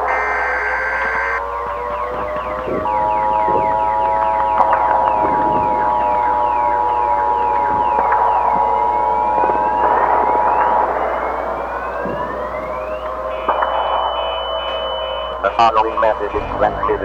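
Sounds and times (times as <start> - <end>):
sharp bangs: 0.0 - 6.2, 9.8 - 17.0
steady two-note tone: 0.0 - 10.4, 11.2 - 17.0
electronic sirens: 0.0 - 17.0.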